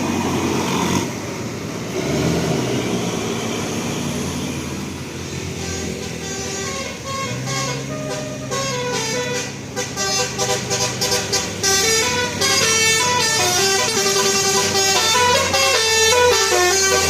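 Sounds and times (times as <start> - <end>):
musical bus horn melody: 5.2 - 17.0.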